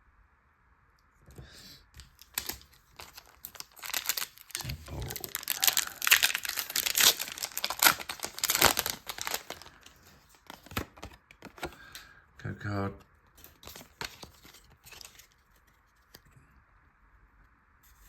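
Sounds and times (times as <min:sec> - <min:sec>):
foil wrapper tearing and crinkling: 0:02.0 - 0:12.0, 0:13.4 - 0:15.4.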